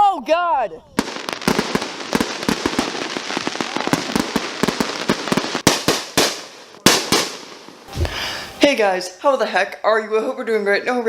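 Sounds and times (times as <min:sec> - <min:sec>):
fireworks crackling: 0:00.9 - 0:09.0
loud firework bangs: 0:01.0 - 0:08.7.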